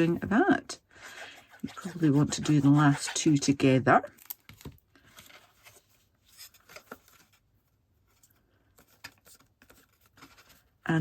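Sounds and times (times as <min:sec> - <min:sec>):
paper rubbing on card box: 0:01.1 - 0:03.6.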